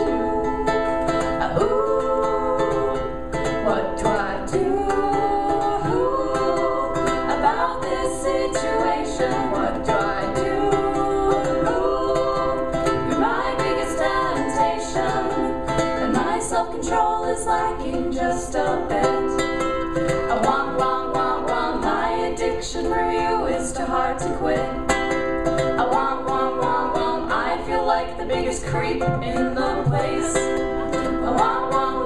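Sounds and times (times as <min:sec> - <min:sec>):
person singing a love song: 0:00.0 - 0:32.0
strummed ukulele: 0:00.0 - 0:32.0.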